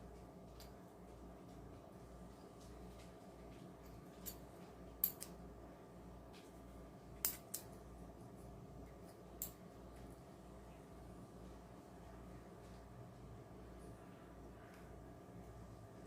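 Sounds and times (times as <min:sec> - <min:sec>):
faint steady hum: 0:00.0 - 0:16.0
metal pieces clinking: 0:05.0 - 0:05.3, 0:07.2 - 0:07.7.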